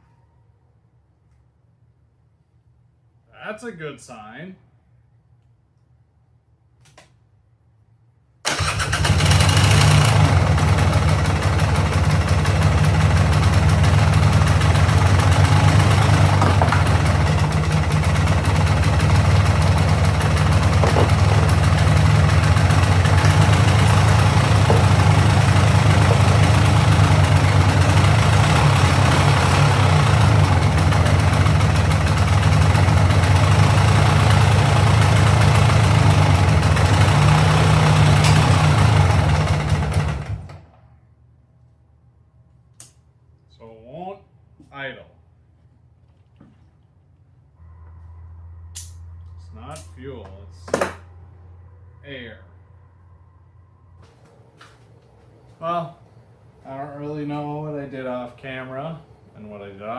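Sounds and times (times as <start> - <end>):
two-stroke engine running: 8.5 - 40.7.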